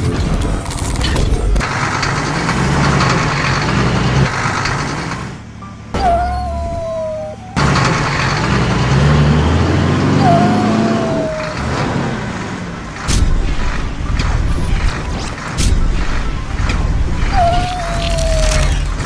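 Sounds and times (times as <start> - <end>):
cartoon engine drone: 6.0 - 8.8, 10.2 - 12.1, 17.3 - 19.0
low rumble with clanks: 7.5 - 10.3, 11.5 - 17.4.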